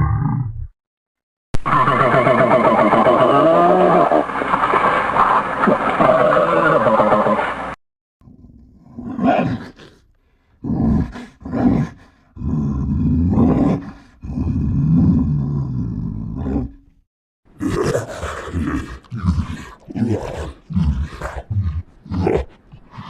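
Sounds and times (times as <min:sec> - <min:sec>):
monster roars: 0:00.0 - 0:00.6, 0:01.6 - 0:04.3, 0:17.6 - 0:23.0
monster growls: 0:00.0 - 0:00.7, 0:01.8 - 0:04.2, 0:10.6 - 0:16.8, 0:17.6 - 0:23.0.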